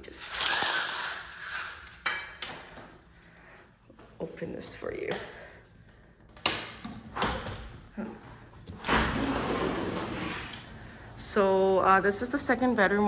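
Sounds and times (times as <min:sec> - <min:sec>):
door sliding open: 0:08.7 - 0:11.0.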